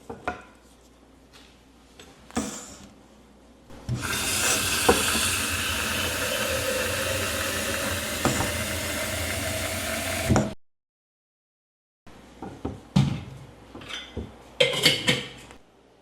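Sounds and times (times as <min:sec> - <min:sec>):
water running from tap: 0:03.9 - 0:10.6.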